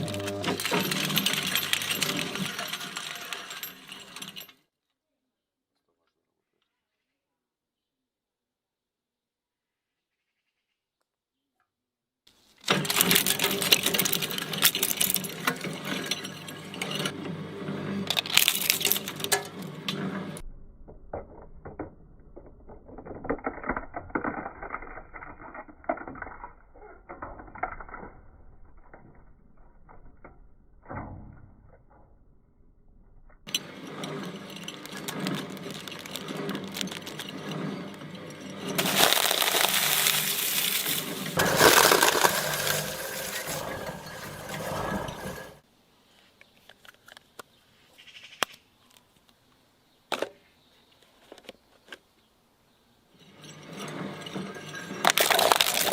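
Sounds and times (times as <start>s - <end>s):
electric shredder grinding: 0.0s - 3.3s, 33.6s - 45.6s, 54.8s - 55.9s.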